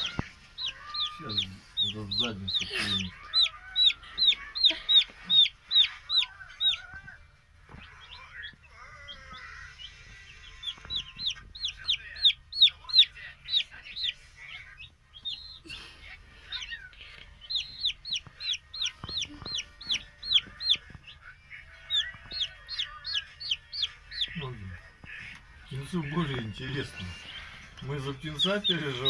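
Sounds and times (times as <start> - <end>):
baby chick peeping: 0.0 - 29.0.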